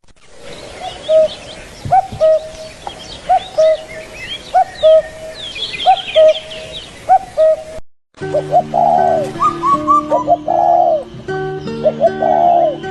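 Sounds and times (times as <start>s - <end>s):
birds chirping and trilling: 0.3s - 12.9s.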